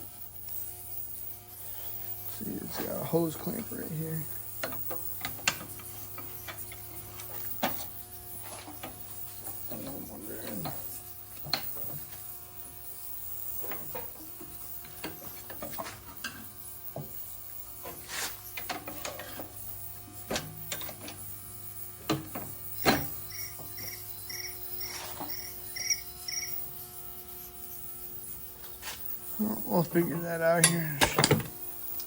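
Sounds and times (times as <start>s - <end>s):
steady low hum: 0.0s - 32.0s
tools and metal parts clinking: 4.6s - 10.9s, 17.9s - 21.3s, 30.5s - 31.6s.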